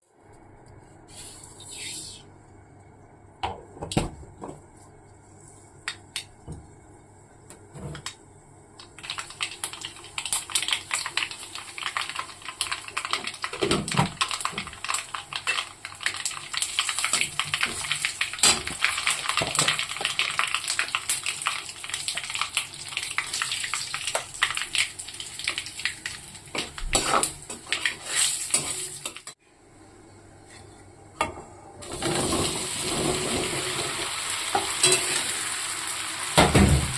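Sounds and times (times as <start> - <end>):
food sizzling in a pan: 8.9 - 29.4, 31.8 - 36.9.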